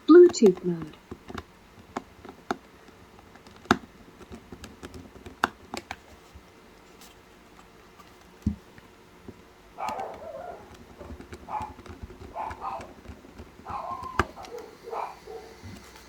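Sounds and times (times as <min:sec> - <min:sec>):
screwdriver clicking on plastic casing: 0:00.2 - 0:06.2, 0:09.3 - 0:14.7.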